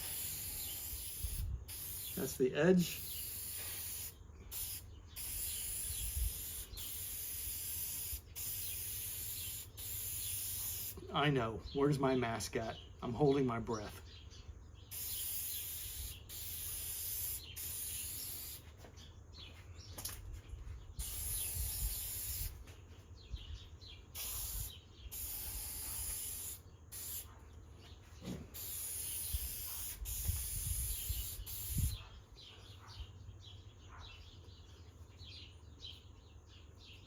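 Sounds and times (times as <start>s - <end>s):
aerosol can spraying: 0.0s - 11.0s, 14.9s - 18.6s, 21.0s - 22.6s, 24.2s - 27.3s, 28.3s - 32.0s.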